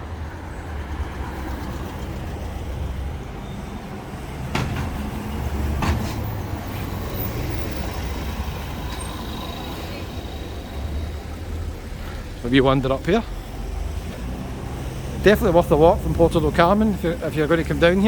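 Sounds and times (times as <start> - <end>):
low street rumble: 0.0 - 18.0
sharp knocks: 4.5 - 6.2.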